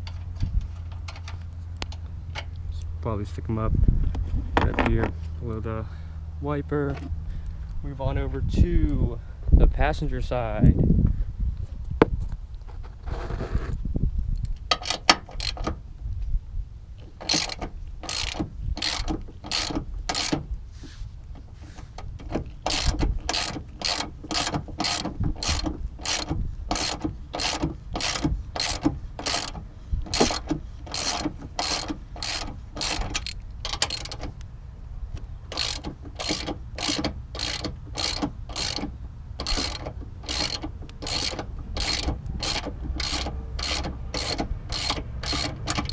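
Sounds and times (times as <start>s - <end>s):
hand ratchet clicking: 14.7s - 15.7s, 17.2s - 20.4s, 22.2s - 34.3s, 35.5s - 45.9s.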